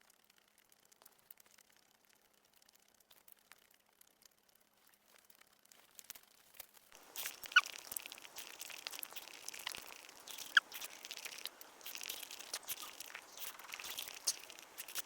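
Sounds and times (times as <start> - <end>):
food wrapper crinkling: 3.0 - 15.0
brief squeaks: 9.2 - 11.4.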